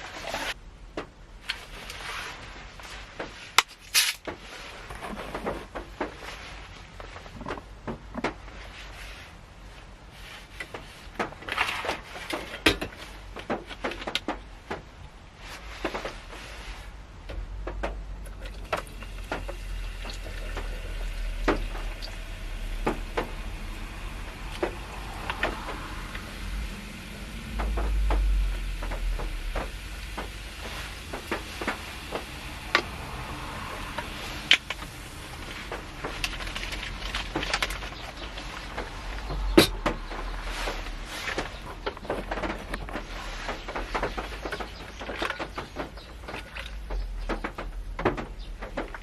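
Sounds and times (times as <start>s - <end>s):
low steady rumble: 14.4s - 49.0s
small knocks and clicks: 27.3s - 49.0s.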